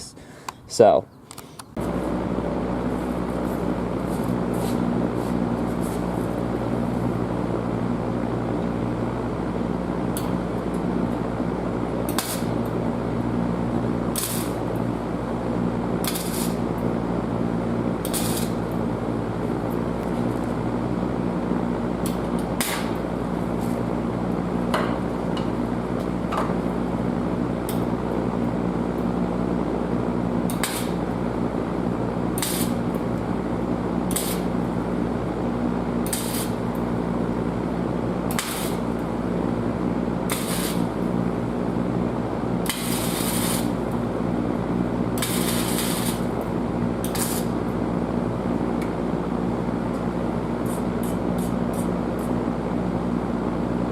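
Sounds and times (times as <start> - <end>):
electrical hum: 0.0 - 53.9
welding crackling hiss: 10.1 - 20.5, 22.0 - 24.0, 27.5 - 29.5, 30.2 - 35.2, 35.9 - 37.0, 38.2 - 39.4, 40.0 - 41.4, 42.6 - 47.8, 49.9 - 52.4.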